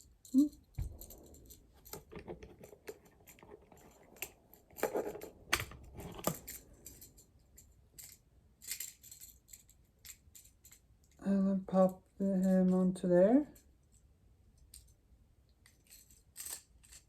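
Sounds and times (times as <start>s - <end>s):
plastic clicks and rattles: 1.8s - 7.0s.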